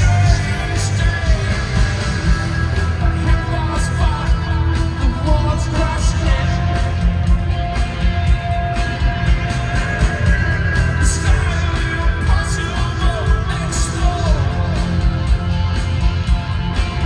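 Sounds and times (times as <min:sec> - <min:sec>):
person singing: 0:00.0 - 0:07.3, 0:09.5 - 0:15.1
drums keeping a steady beat: 0:00.0 - 0:17.0
live rock band: 0:00.0 - 0:17.0.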